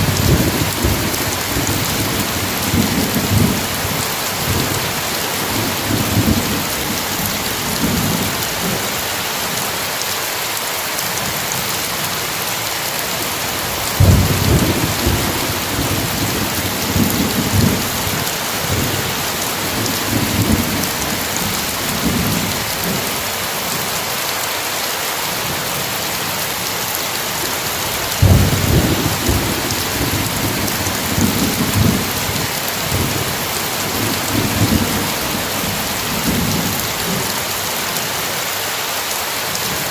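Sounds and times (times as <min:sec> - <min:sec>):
heavy rain: 0:00.0 - 0:39.9
rolling thunder: 0:13.7 - 0:23.0, 0:28.1 - 0:37.2.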